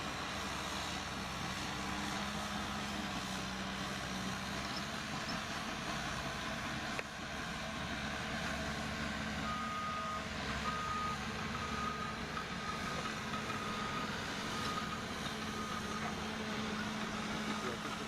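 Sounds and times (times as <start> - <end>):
bulldozer diesel engine running: 0.0 - 18.0.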